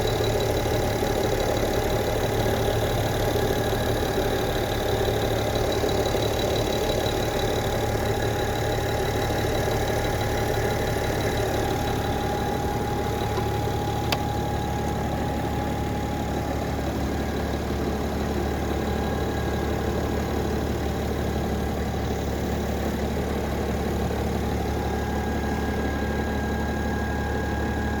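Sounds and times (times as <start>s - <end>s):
car engine idling: 0.0s - 28.0s
battery charger whine: 11.0s - 16.4s.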